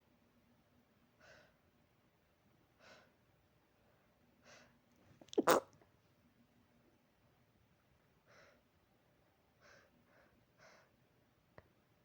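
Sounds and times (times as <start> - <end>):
person breathing softly: 2.8 - 3.2, 8.2 - 8.7, 9.6 - 11.0
person sneezing loudly: 5.3 - 5.7.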